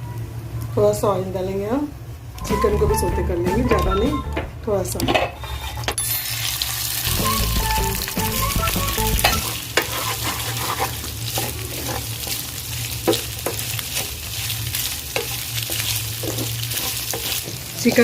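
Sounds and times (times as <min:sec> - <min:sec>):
chicken sizzling in a pan: 0:06.0 - 0:18.0.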